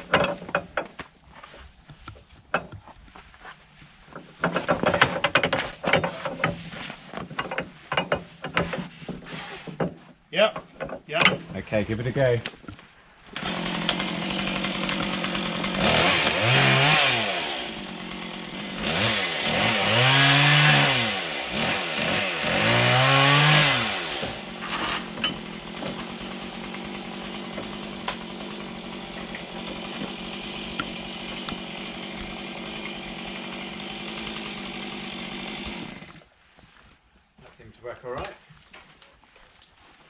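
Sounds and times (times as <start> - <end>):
chainsaw revving and idling: 13.3 - 36.3.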